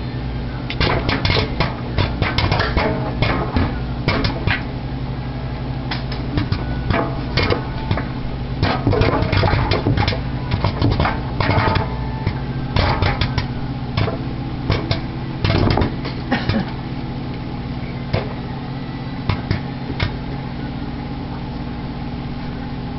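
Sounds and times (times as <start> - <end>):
microwave oven hum: 0.0 - 22.9
popcorn popping: 0.7 - 4.8, 5.8 - 17.4, 19.2 - 20.3.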